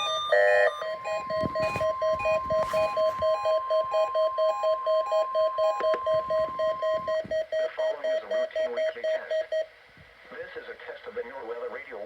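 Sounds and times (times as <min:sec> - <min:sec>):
steady alarm tone: 0:00.0 - 0:08.7
rapid electronic alarm beeping: 0:00.0 - 0:09.7.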